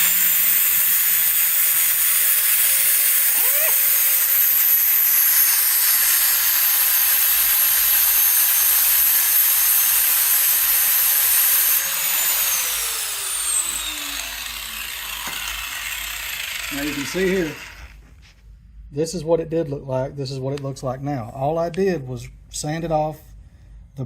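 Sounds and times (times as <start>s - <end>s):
angle grinder whining: 0.0s - 18.0s.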